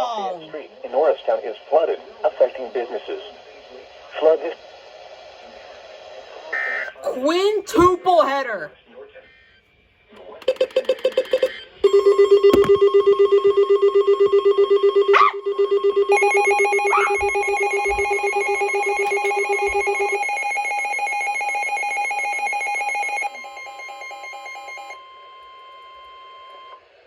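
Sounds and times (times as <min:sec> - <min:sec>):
rapidly pulsing electronic beeps: 0:10.4 - 0:25.0.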